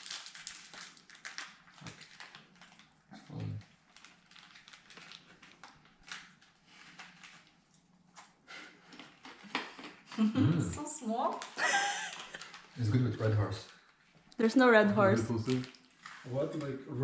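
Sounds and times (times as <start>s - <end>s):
crunchy snack being chewed: 0.0s - 7.9s.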